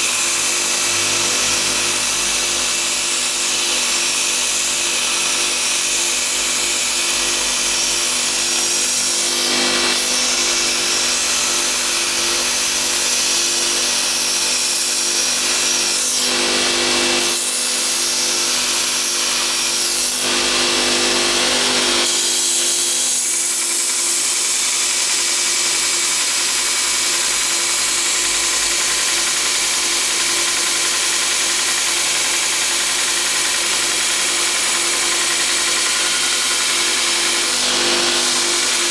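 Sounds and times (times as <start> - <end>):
grinder belt hiss: 0.0 - 38.9.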